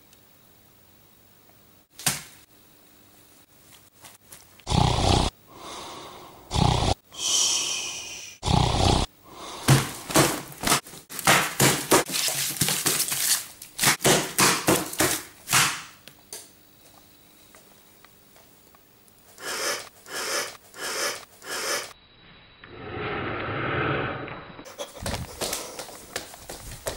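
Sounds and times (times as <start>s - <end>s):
person snoring: 4.7s - 9.8s
short noisy breaths: 5.5s - 6.5s, 7.1s - 8.4s
whistling breath: 7.1s - 8.4s.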